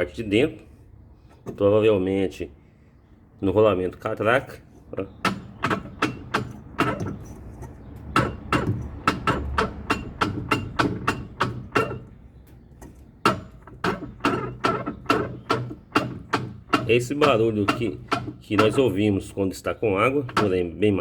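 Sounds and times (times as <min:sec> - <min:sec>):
washing machine clicking and knocking: 0:05.0 - 0:21.0.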